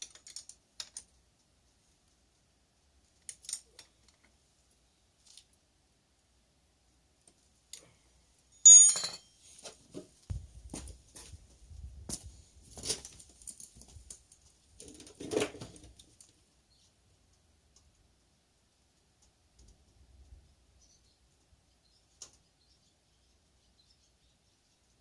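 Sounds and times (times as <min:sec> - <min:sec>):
small metal parts clicking: 0:00.0 - 0:01.2, 0:03.2 - 0:04.3
metallic clink with ringing tone: 0:08.6 - 0:09.4.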